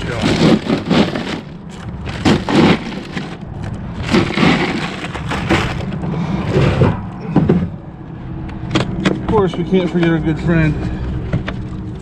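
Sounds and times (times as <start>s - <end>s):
ice cubes clattering in a cooler: 0.0s - 6.0s.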